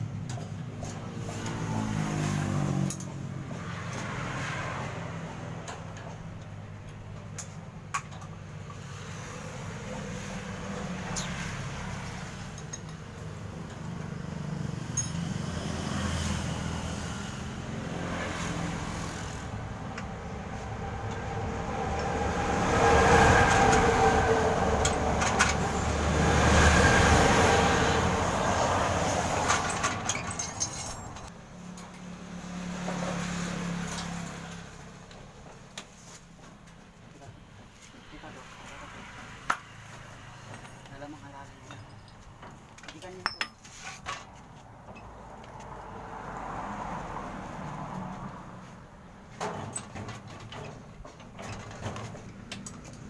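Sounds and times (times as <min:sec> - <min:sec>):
light metallic clinks: 0:14.9 - 0:15.3.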